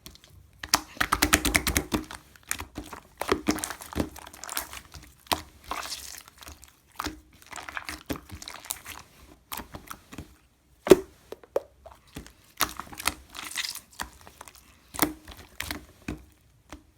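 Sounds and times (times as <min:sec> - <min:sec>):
squishy rustles: 0:00.0 - 0:16.9
slime crackling and popping: 0:00.6 - 0:10.0, 0:12.5 - 0:15.8.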